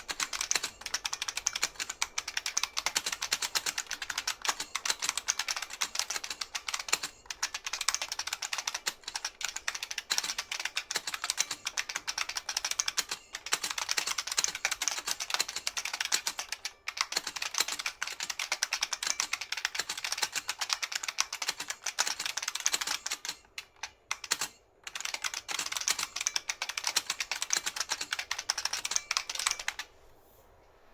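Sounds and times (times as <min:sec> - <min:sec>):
fast keyboard typing: 0:00.0 - 0:29.9.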